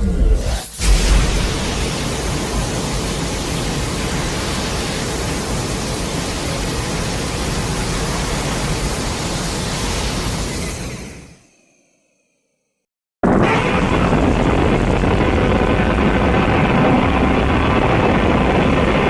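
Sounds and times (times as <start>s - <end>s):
rushing noise with deep rumble: 13.2s - 19.0s.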